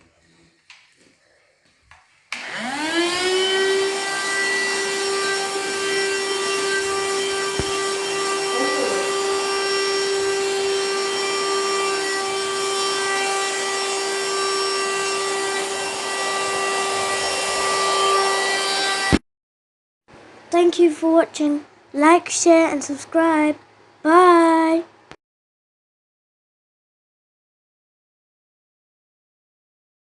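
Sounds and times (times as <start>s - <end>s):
vacuum cleaner motor whine: 2.3s - 19.2s.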